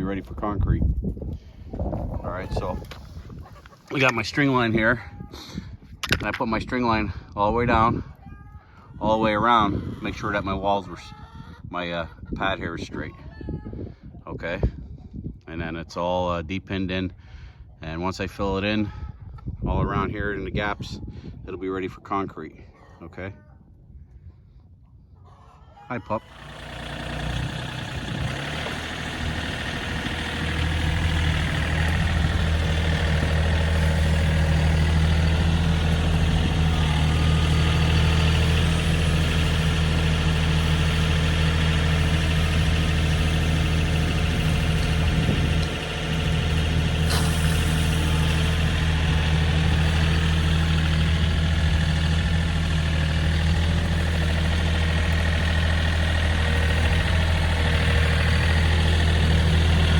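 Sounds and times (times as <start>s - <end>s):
loader engine droning: 26.2s - 59.9s.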